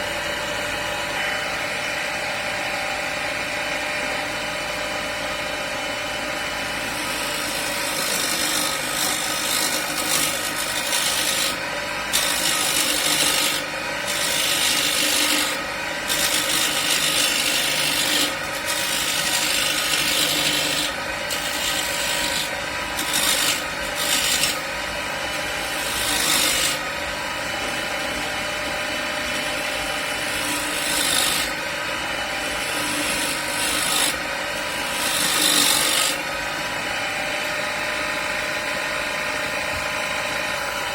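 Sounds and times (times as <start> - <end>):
chisel scraping spinning wood: 0.0 - 40.9
lathe motor hum: 0.0 - 40.9.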